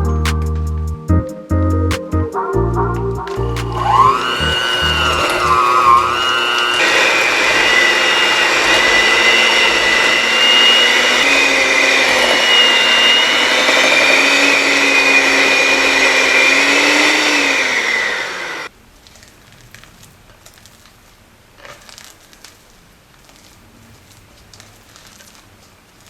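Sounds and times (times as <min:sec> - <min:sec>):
hand mixer motor running: 0:03.7 - 0:18.7.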